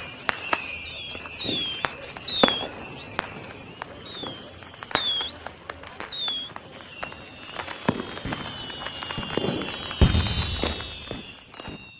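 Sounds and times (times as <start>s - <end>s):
firework cracks and pops: 0.0s - 11.9s
firework whistles falling in pitch: 0.0s - 11.9s
deep firework bang: 9.2s - 11.8s.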